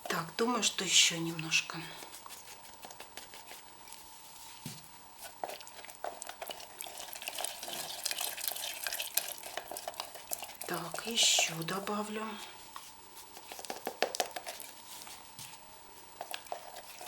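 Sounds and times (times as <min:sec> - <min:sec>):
stick stirring plaster in rubber ball: 0:00.0 - 0:17.0.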